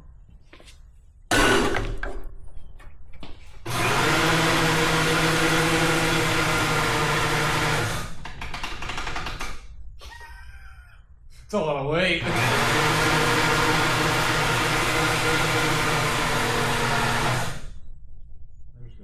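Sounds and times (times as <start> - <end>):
electric hoist motor running: 3.6 - 9.5, 12.2 - 17.8.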